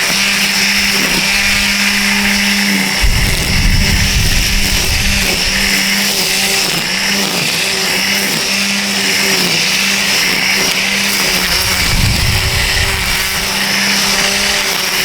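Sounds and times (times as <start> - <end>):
string trimmer whining: 0.0 - 15.0
choppy rough noise: 3.0 - 5.8, 11.2 - 15.0.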